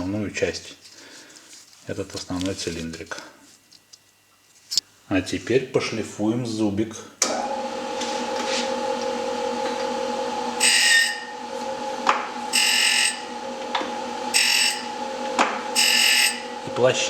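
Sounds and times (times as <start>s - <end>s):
grinder whining: 7.2s - 17.0s
grinding on steel: 7.8s - 17.0s.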